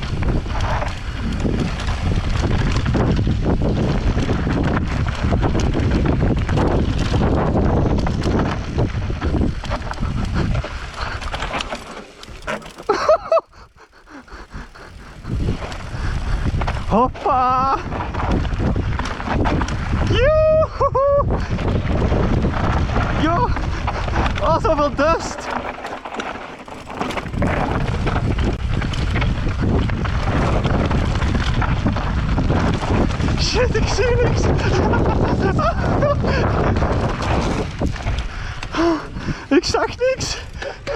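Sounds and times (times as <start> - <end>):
bike rattling over rough ground: 0.0 - 20.4, 21.3 - 40.9
wind buffeting microphone: 0.0 - 40.9
bike freewheel ticking: 5.4 - 19.0, 23.5 - 31.4
tyre rumble: 8.1 - 17.0, 25.0 - 31.1.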